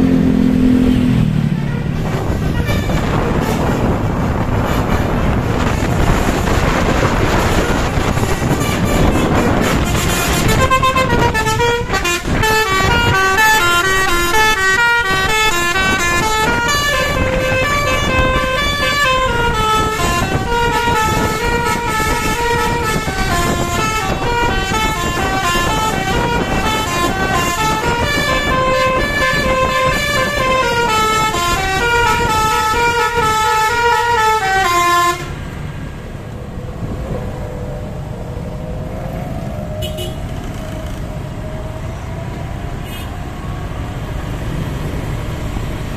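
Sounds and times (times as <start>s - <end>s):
vehicle noise: 0.0s - 45.9s
multi-note air horn tune: 7.3s - 35.4s.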